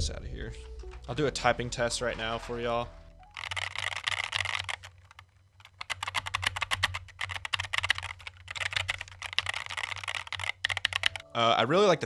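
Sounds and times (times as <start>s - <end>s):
mechanical keyboard typing: 3.2s - 11.2s.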